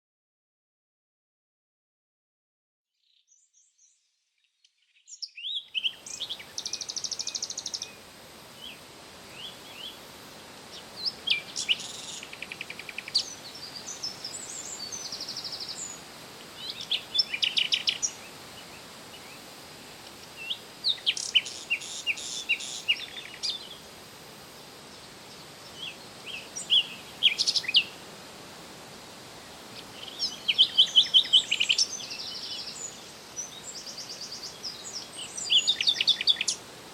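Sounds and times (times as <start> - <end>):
songbird chirping and trilling: 3.0 - 8.0, 10.7 - 19.4, 20.2 - 23.8, 25.0 - 28.0, 29.7 - 36.7
outdoor background hiss: 3.2 - 36.9.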